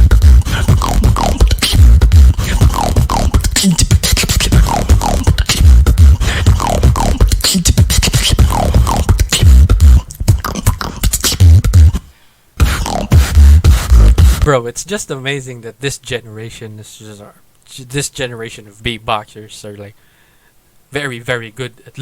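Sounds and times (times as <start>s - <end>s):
woman beatboxing: 0.0s - 14.6s.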